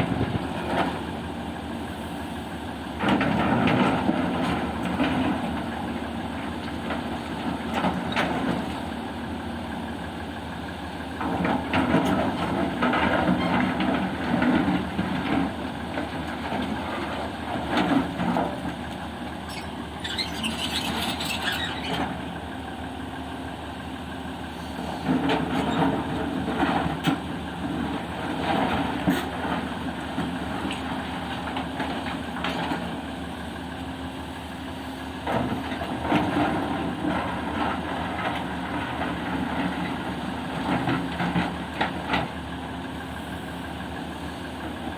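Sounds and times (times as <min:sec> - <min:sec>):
heavy diesel engine running: 0:00.0 - 0:44.9.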